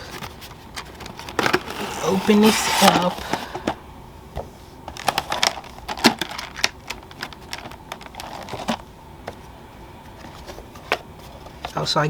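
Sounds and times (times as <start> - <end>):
cardboard box being opened: 0.0 - 3.8, 4.9 - 8.8
packaging clicks and crinkles: 0.0 - 3.8, 4.9 - 8.8.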